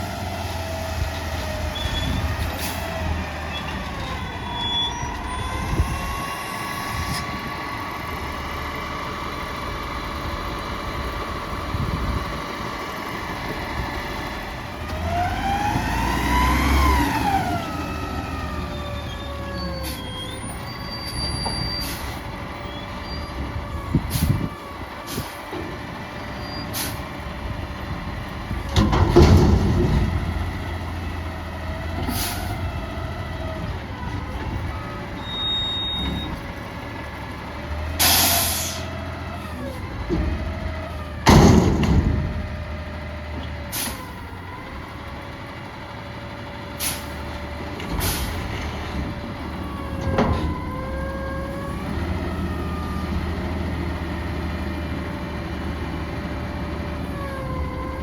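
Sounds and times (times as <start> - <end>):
diesel engine running: 0.0 - 58.0
loud metallic bangs: 41.2 - 42.5
short air hiss: 46.8 - 47.2.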